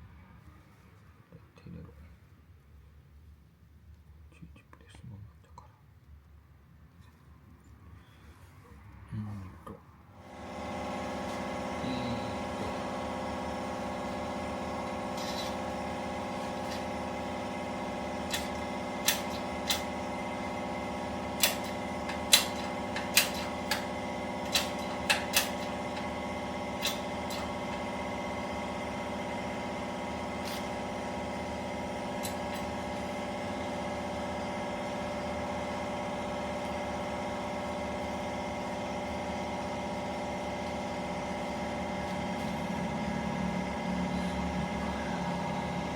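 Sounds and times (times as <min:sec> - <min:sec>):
small electric motor humming: 0:10.3 - 0:13.2
sharp clicks and knocks: 0:21.4 - 0:26.1.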